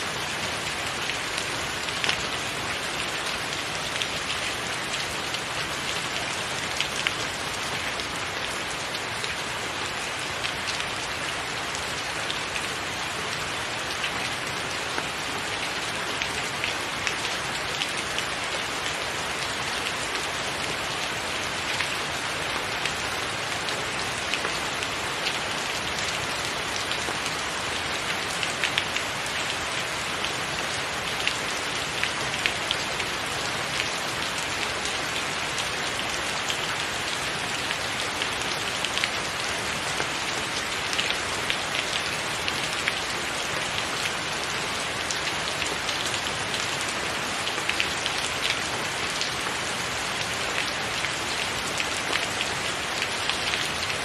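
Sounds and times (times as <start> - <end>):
rain on a tiled roof: 0.0 - 54.0.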